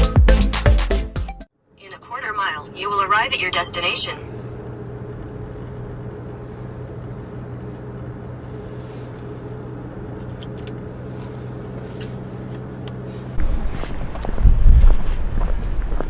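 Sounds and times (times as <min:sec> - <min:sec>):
vehicle engine and road hum: 0:01.8 - 0:16.0
loud low rumble with knocks: 0:13.4 - 0:16.0.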